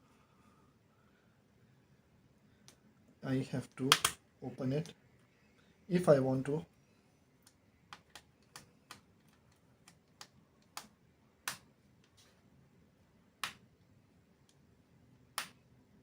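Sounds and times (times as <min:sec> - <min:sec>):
sharp plastic clicks: 0:03.9 - 0:04.2.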